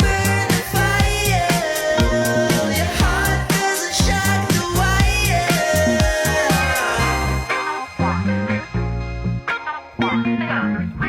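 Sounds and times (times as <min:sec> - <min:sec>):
upbeat pop funk music: 0:00.0 - 0:11.0.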